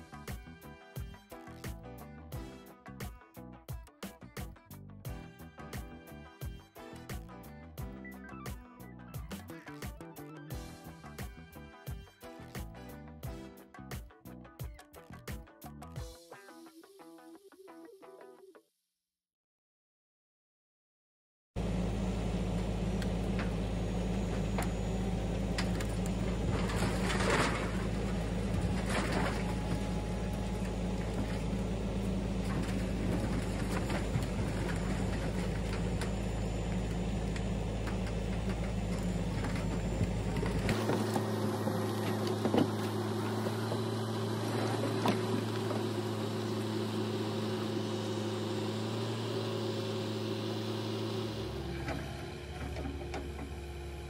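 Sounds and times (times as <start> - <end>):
excavator diesel engine running: 21.6 - 54.0.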